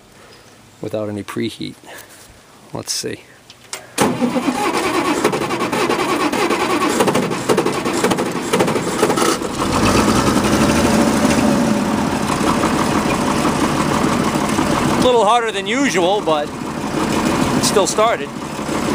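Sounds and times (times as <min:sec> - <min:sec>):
diesel tractor engine starting: 0:04.0 - 0:18.9.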